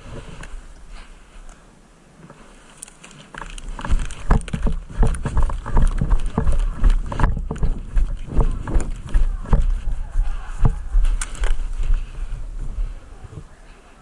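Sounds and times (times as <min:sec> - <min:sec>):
gear rustling and clattering: 0:02.2 - 0:13.5
heavy running footfalls: 0:03.4 - 0:13.1.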